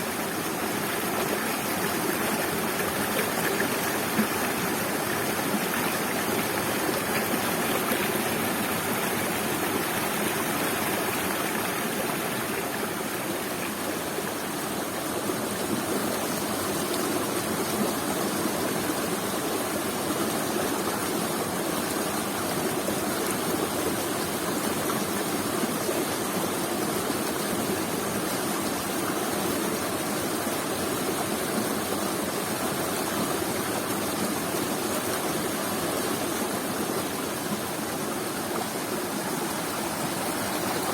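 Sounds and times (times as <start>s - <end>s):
fast-flowing river: 0.0s - 40.9s
waterfall rushing: 36.2s - 40.9s.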